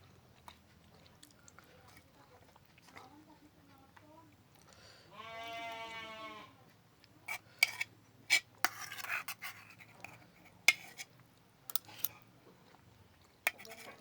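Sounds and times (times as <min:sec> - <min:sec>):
rustling scrape: 0:07.3 - 0:11.1, 0:13.5 - 0:14.0.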